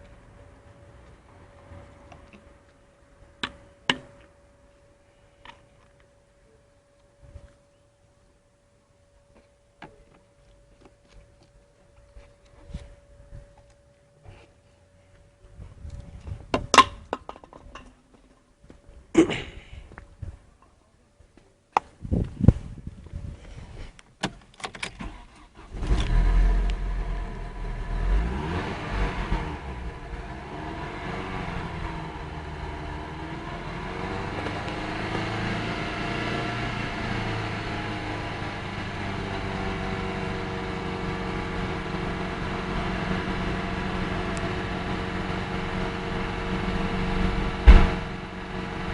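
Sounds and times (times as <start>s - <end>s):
car engine starting and idling: 24.8s - 48.9s.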